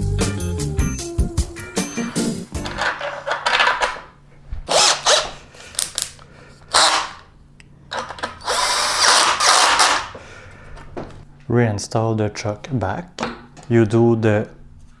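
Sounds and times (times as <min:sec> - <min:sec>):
cordless drill driving bolts: 0:02.6 - 0:04.0, 0:04.7 - 0:06.1, 0:06.7 - 0:07.2, 0:07.9 - 0:10.2.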